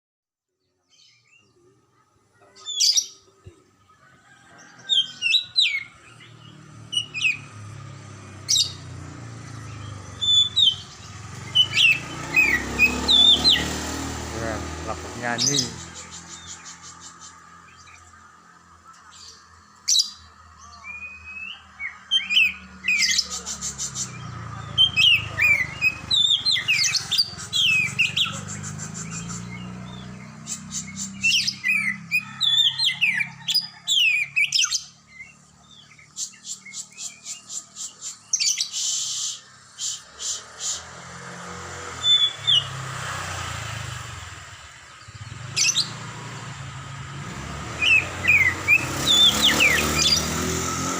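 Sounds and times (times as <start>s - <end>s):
magpie-robin whistles and chatter: 2.5s - 3.2s, 20.8s - 40.8s, 47.8s - 50.2s.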